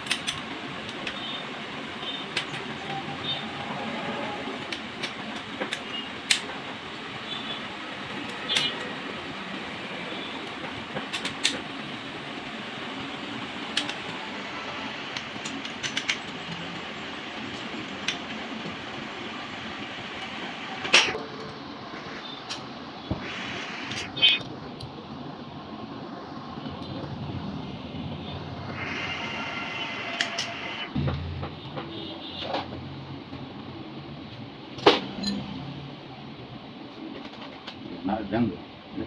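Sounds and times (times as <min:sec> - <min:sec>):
metallic clicks of hand tools: 0:00.0 - 0:00.4
mechanical hum: 0:00.0 - 0:39.0.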